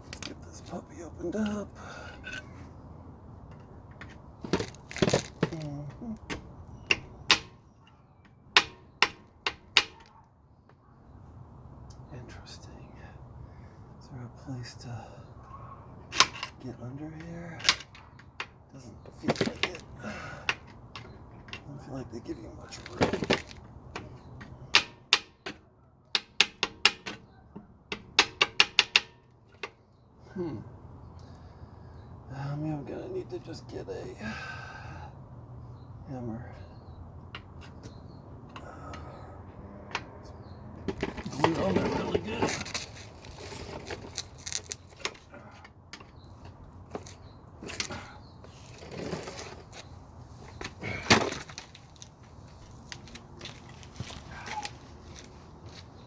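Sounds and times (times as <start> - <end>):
tools scraping metal: 2.1 - 2.7
metal-on-metal taps: 8.5 - 10.2, 23.0 - 29.8
tools knocking on metal cover: 24.0 - 25.6, 26.2 - 29.8.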